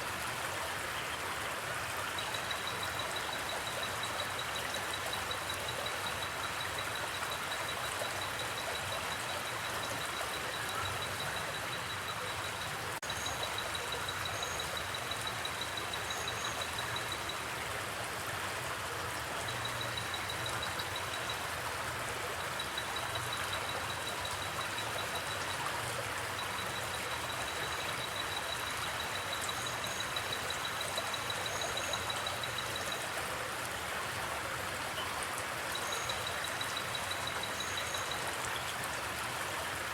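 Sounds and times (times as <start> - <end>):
cricket trilling: 2.2 - 17.3, 22.4 - 33.1.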